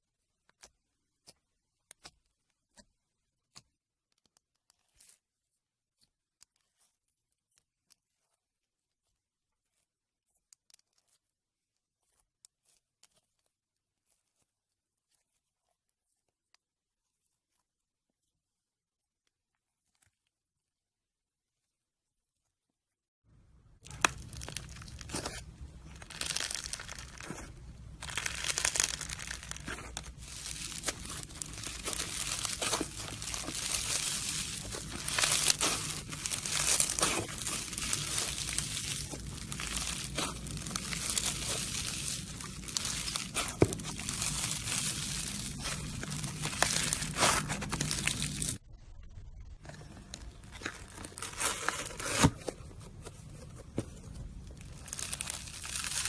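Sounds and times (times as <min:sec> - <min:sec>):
slime crackling and popping: 0:23.7 - 0:48.6, 0:49.7 - 0:52.4, 0:54.2 - 0:56.0.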